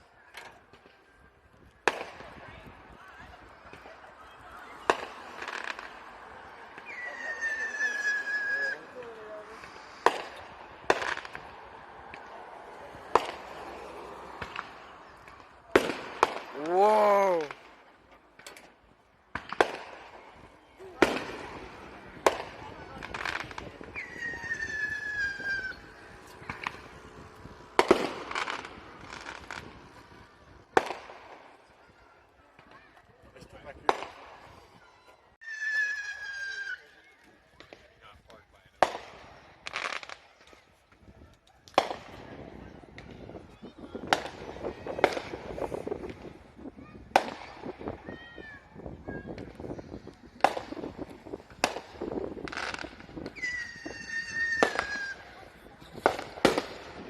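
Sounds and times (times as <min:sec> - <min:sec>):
firework crackling: 0:00.6 - 0:32.8, 0:37.6 - 0:57.0
firework cracks: 0:01.8 - 0:32.8, 0:33.7 - 0:34.6, 0:37.6 - 0:48.0, 0:48.7 - 0:57.0
firework bangs: 0:01.8 - 0:32.9, 0:33.7 - 0:34.6, 0:38.8 - 0:57.0
high steady whistle: 0:06.8 - 0:08.9, 0:53.4 - 0:55.2
firework whistle: 0:06.8 - 0:11.4, 0:23.1 - 0:26.8, 0:35.4 - 0:37.0, 0:52.5 - 0:55.4.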